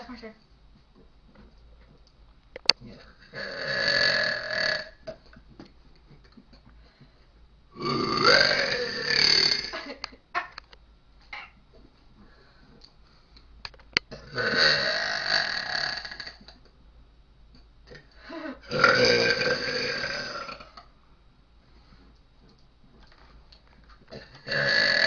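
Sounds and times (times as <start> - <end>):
loud burps: 2.8 - 5.4, 7.7 - 10.1, 14.0 - 16.6, 17.9 - 20.9, 24.1 - 25.0.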